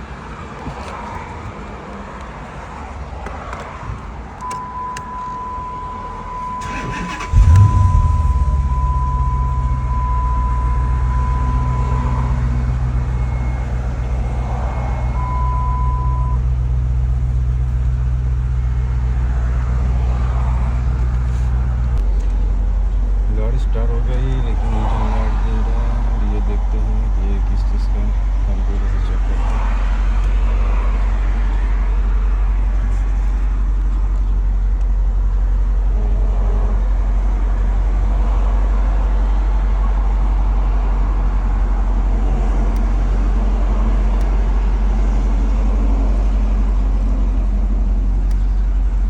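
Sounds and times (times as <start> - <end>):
high-pitched warning tone: 4.5 - 16.4
engine idling: 5.8 - 36.2
engine cranking and starting: 6.4 - 10.2.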